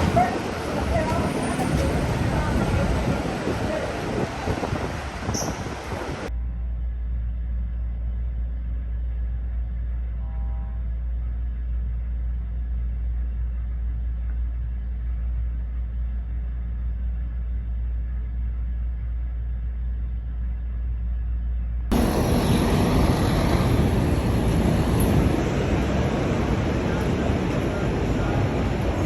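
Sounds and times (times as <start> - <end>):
loud rushing noise: 0.0 - 6.3, 21.9 - 29.0
low city rumble: 0.0 - 29.0.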